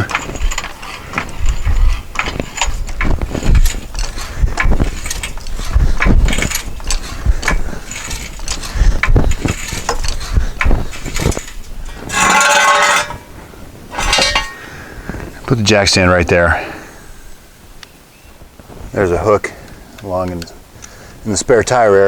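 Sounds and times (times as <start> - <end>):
floor jack pumping: 0.0 - 14.7
metallic clatter: 0.0 - 14.7.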